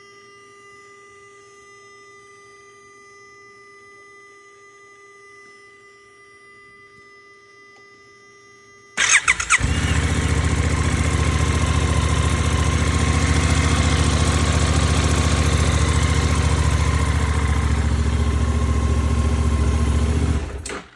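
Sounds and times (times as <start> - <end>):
motorcycle engine starting and idling: 9.0 - 20.9.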